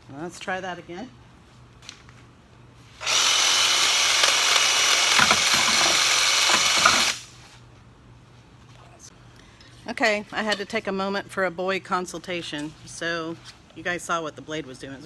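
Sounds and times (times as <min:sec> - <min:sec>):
reciprocating saw running: 0:03.0 - 0:07.3.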